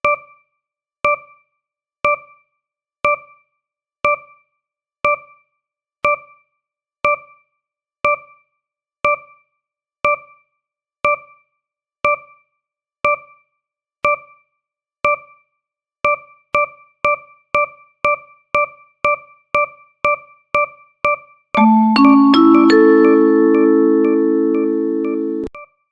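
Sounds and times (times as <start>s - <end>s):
countdown timer electronic tones: 21.6s - 25.6s.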